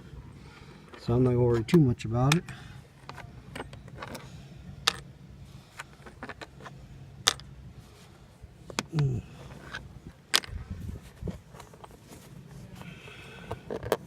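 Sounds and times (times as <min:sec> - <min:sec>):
steady low hum: 0:00.0 - 0:14.0
parts and tools clicking: 0:05.7 - 0:07.5
falling hum-like vocal sound: 0:08.8 - 0:10.1.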